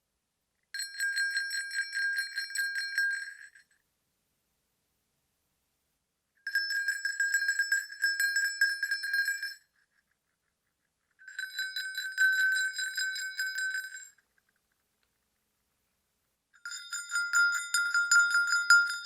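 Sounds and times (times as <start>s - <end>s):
sleigh bells jingling: 6.5s - 9.9s, 11.2s - 14.3s, 16.6s - 19.0s.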